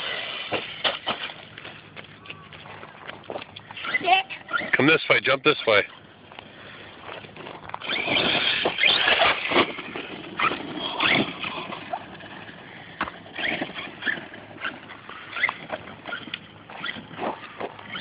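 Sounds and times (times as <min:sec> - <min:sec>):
electric motor whining: 0:07.6 - 0:18.0.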